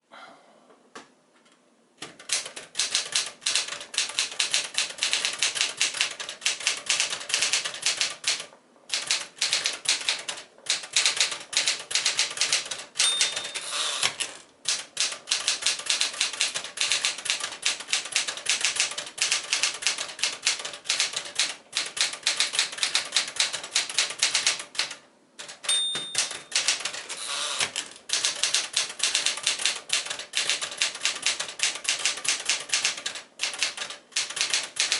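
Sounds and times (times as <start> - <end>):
typewriter typing fast: 2.0 - 34.9
typewriter bell ringing: 13.0 - 14.1, 25.6 - 27.3.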